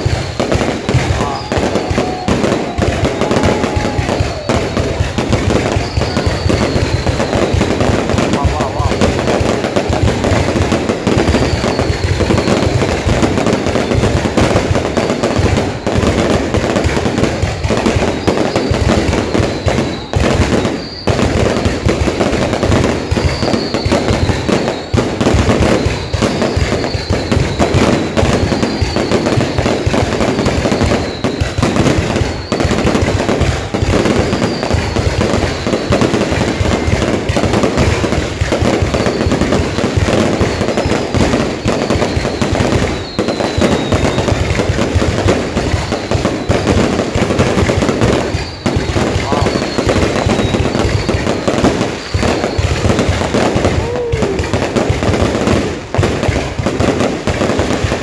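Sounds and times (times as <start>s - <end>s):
high falling whistles: 0.0s - 7.9s, 11.2s - 12.8s, 18.1s - 21.4s, 23.1s - 29.8s, 40.6s - 44.5s, 48.2s - 52.9s
fireworks crackling bangs: 0.0s - 58.0s.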